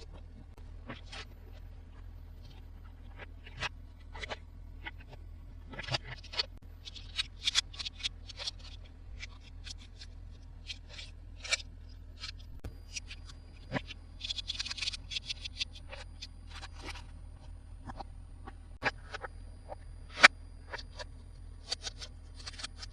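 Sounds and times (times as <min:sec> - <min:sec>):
faint low hum: 0:00.0 - 0:22.9
plastic toys and packaging handled: 0:05.8 - 0:17.1, 0:21.6 - 0:22.9.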